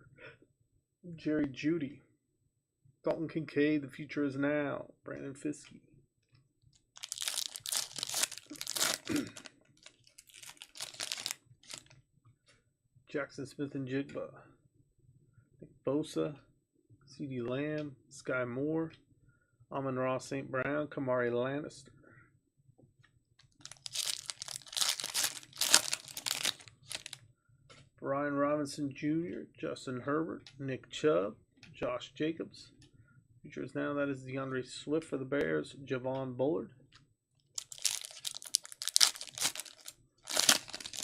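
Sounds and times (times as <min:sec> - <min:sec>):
wrapper tearing and crinkling: 0:07.0 - 0:11.9, 0:23.6 - 0:27.2, 0:37.6 - 0:41.0.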